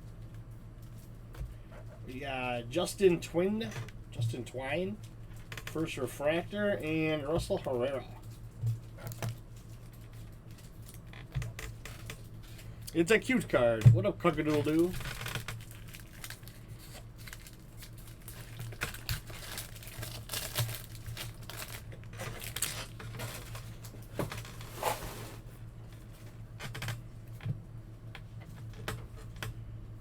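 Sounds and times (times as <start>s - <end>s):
low steady hum: 0.0s - 30.0s
card wrappers tearing and crinkling: 14.4s - 24.7s.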